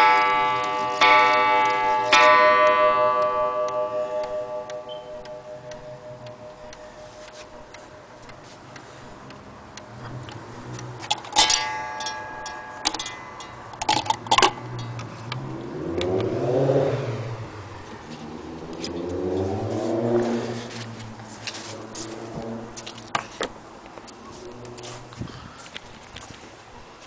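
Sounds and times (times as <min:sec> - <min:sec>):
clock gong strike: 0:00.0 - 0:08.6
wall clock ticking: 0:00.0 - 0:16.7
hums rising and falling in pitch: 0:14.6 - 0:22.8.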